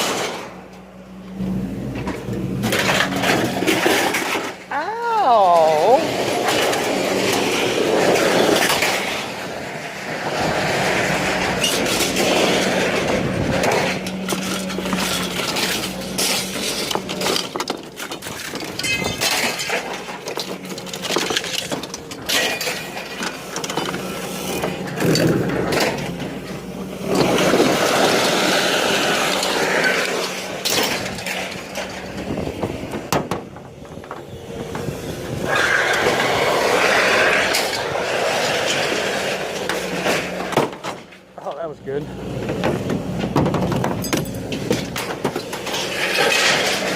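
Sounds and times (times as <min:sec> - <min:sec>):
scrap metal clanking: 0:01.4 - 0:04.7, 0:05.5 - 0:34.9, 0:42.2 - 0:46.9.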